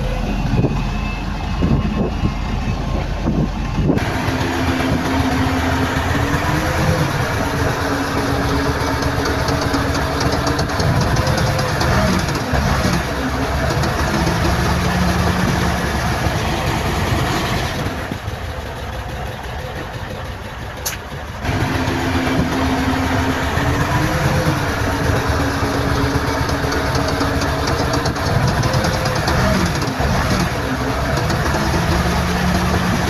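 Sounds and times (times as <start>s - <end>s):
engine whine: 0.0s - 33.0s
heavy diesel machines running: 0.0s - 33.0s
sharp click: 20.8s - 21.0s.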